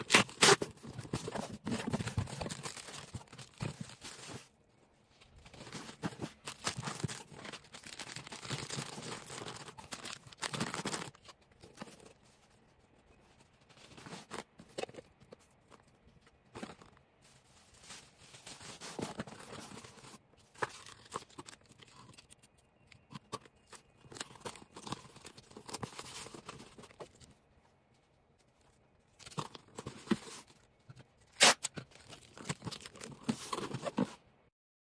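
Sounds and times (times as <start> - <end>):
plastic packing crinkling: 0.0 - 4.5, 5.4 - 12.6.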